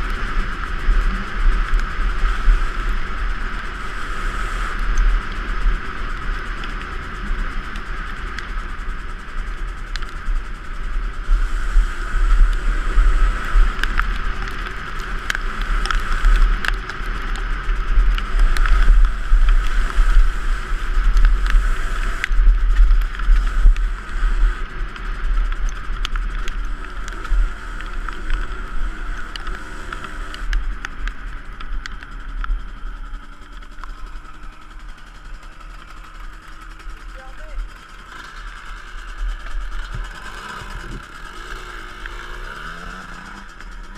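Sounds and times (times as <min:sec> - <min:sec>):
two-stroke dirt bike engine: 0:00.0 - 0:43.9
sharp clicks: 0:21.0 - 0:43.9.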